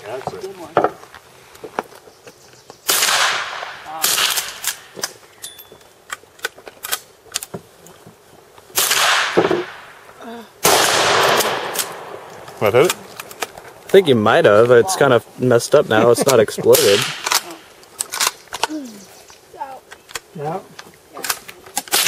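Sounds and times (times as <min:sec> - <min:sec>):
rifle shots echoing: 0:02.9 - 0:05.1, 0:08.8 - 0:10.0, 0:10.6 - 0:13.1, 0:16.7 - 0:17.6.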